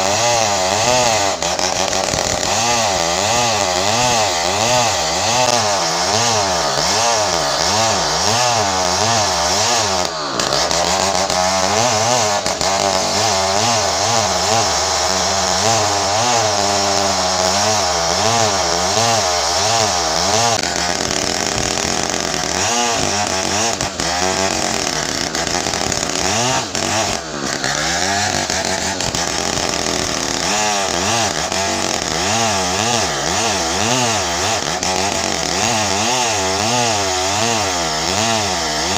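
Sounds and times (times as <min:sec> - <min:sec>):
chainsaw running hard: 0:00.0 - 0:38.9.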